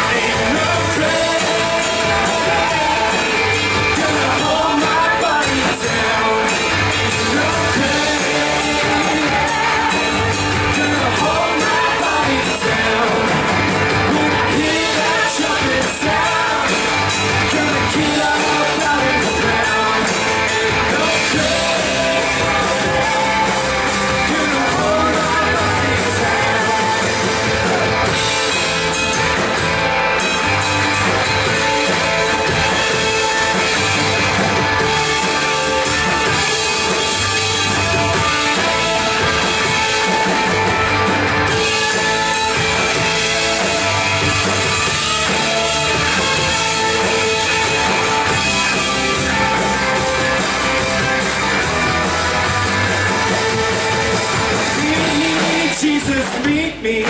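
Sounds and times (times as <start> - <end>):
person singing: 0.0 - 28.1, 53.2 - 57.0
bass: 0.0 - 57.0
drums: 0.0 - 57.0
guitar: 0.0 - 57.0.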